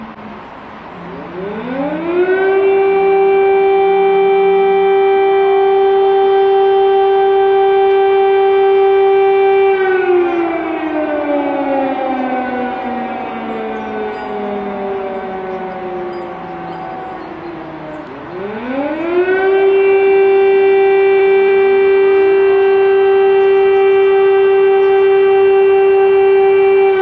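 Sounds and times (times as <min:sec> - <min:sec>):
air-raid siren wailing: 0:00.0 - 0:27.0.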